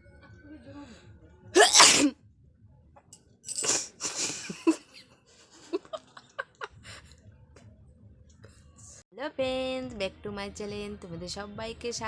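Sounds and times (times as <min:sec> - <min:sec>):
woman sneezing: 0:01.6 - 0:02.2.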